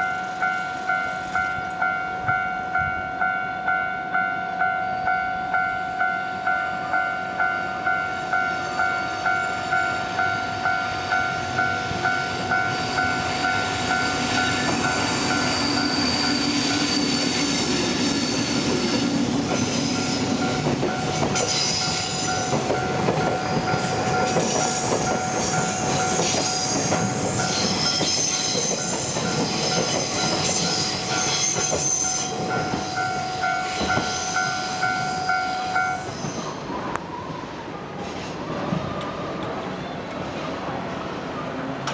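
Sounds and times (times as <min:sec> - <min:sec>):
level crossing warning bell ringing: 0:00.0 - 0:36.2
freight train passing: 0:00.0 - 0:41.9
train wheels squealing: 0:12.1 - 0:37.2.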